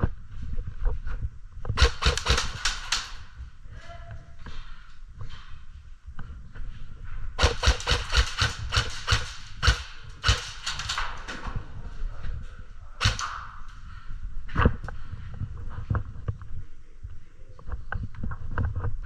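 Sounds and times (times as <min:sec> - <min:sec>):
airsoft guns firing: 0:01.8 - 0:03.3, 0:07.4 - 0:11.3, 0:13.0 - 0:13.7.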